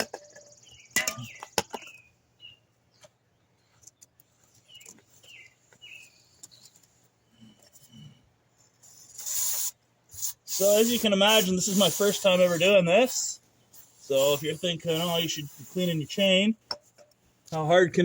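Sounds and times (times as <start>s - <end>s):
small bird chirping: 0.2s - 7.0s
aerosol can spraying hiss: 9.1s - 13.3s, 13.9s - 16.0s.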